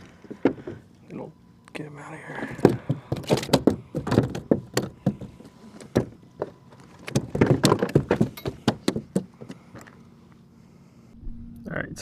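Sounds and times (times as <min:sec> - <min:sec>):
gear knocking and rattling: 0:02.6 - 0:09.9.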